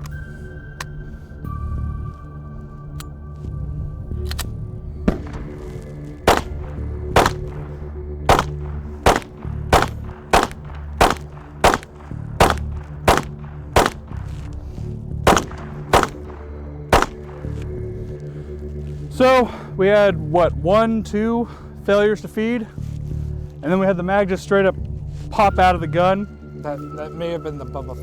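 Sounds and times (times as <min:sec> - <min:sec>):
background music: 0:00.0 - 0:28.0
pistol shots: 0:05.1 - 0:14.5, 0:15.3 - 0:17.6.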